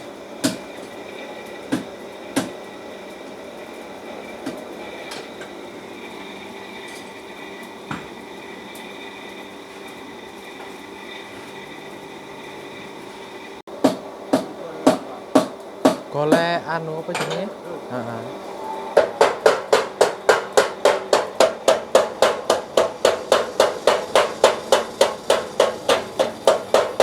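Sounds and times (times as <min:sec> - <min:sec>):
workshop machine humming: 0:00.0 - 0:27.0
sharp metal knocks: 0:19.0 - 0:27.0.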